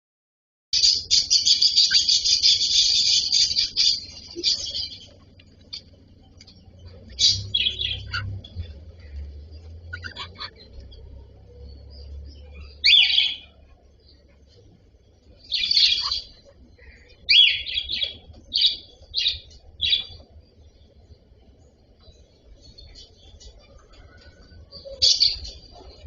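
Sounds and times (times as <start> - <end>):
cockatiel chirping: 0.8 - 5.9, 9.9 - 10.8, 15.5 - 16.4.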